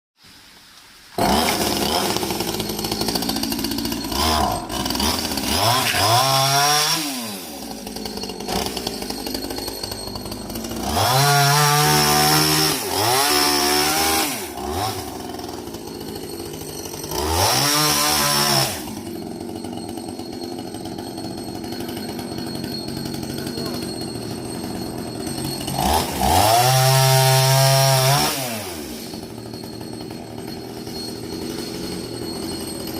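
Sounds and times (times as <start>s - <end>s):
chainsaw engine revving and idling: 1.2s - 32.9s.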